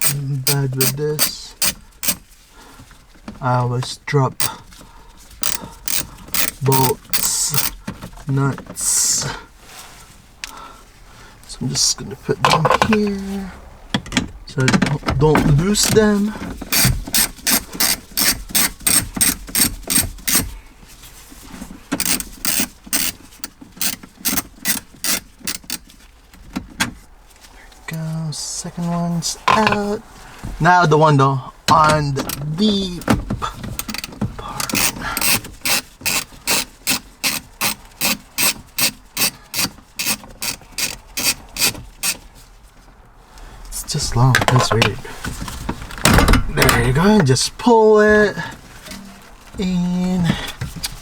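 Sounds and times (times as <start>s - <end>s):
socket ratchet clicking: 0.0s - 2.3s, 5.4s - 7.8s, 16.6s - 20.6s, 21.9s - 25.9s, 32.2s - 32.6s, 33.7s - 42.2s.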